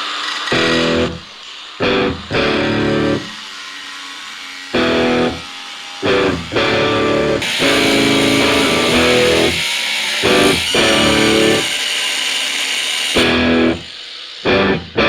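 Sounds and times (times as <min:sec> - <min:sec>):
rock music with electric guitar: 0:00.6 - 0:01.2, 0:01.8 - 0:03.4, 0:04.8 - 0:05.4, 0:06.0 - 0:09.6, 0:10.2 - 0:11.6, 0:13.2 - 0:15.0.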